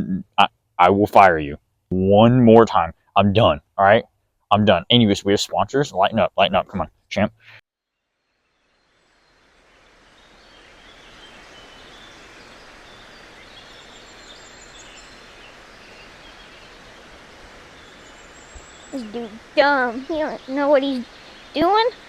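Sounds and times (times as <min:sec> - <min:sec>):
faint bird chirps: 0:07.9 - 0:22.0
outdoor noise wash: 0:08.9 - 0:22.0.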